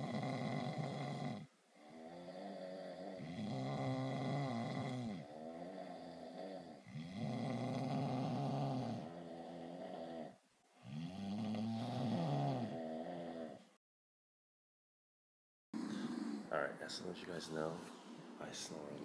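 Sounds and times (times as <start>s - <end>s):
man snoring: 0.0s - 13.7s.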